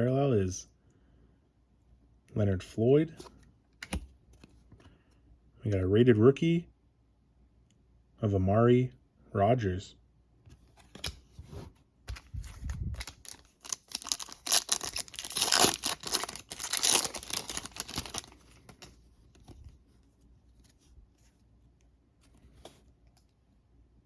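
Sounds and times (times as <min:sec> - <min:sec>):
plastic wrapper tearing and crinkling: 0:12.1 - 0:18.4.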